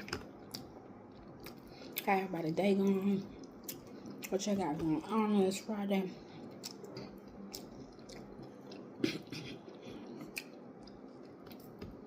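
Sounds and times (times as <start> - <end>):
person chewing wetly: 0.0 - 2.1, 3.2 - 4.4, 6.3 - 12.0.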